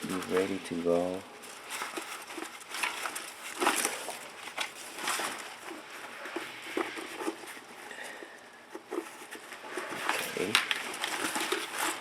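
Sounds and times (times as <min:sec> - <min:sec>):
plant rustling and crackling: 0:00.0 - 0:07.8.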